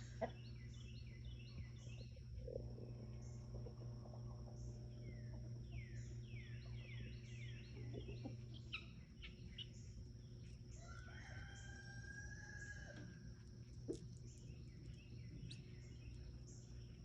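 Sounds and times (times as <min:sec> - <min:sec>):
guinea fowl chirping: 0:00.0 - 0:01.4, 0:05.9 - 0:09.8
steady high whine: 0:00.0 - 0:10.9
low hum: 0:00.0 - 0:17.0.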